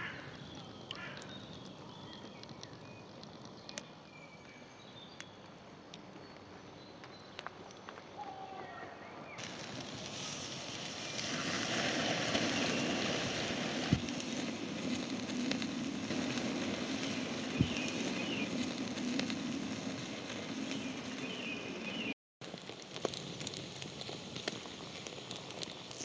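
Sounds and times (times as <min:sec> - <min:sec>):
sharp pops from fire: 0:00.0 - 0:04.0, 0:09.4 - 0:26.0
campfire crackling: 0:00.0 - 0:08.2, 0:09.0 - 0:26.0.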